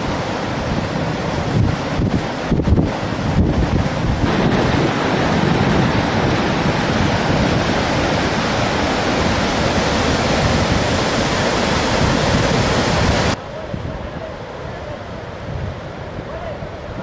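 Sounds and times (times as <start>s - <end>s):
floodwater rushing: 0.0s - 13.4s.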